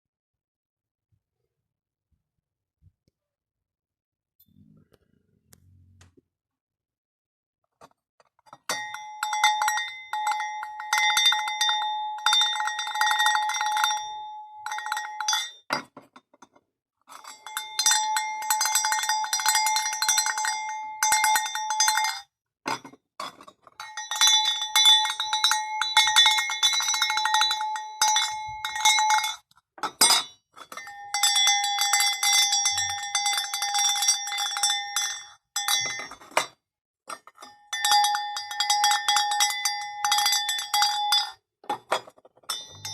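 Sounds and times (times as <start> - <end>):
clapper bells clanging rapidly: 37.7 - 41.3.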